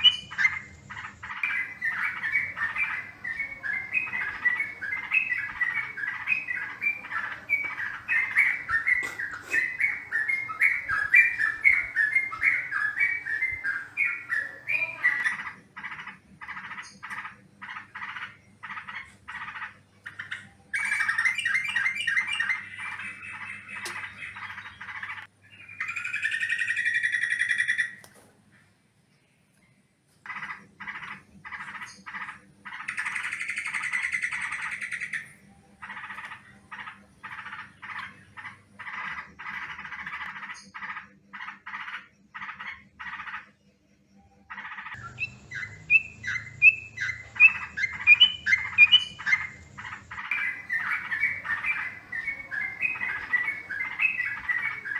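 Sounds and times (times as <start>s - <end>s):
bird chattering calls: 0.0s - 25.3s, 44.5s - 54.9s
bird churring bursts: 1.4s - 15.4s, 50.3s - 54.9s.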